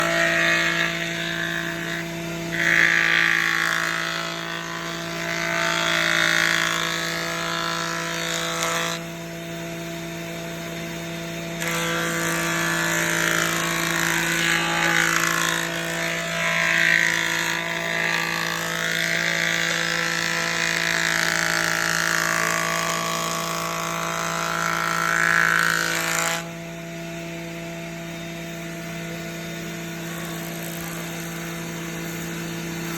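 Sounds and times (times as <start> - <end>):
power tool motor humming: 0.0 - 26.6, 28.1 - 32.9
power tool cutting wood: 0.0 - 32.9.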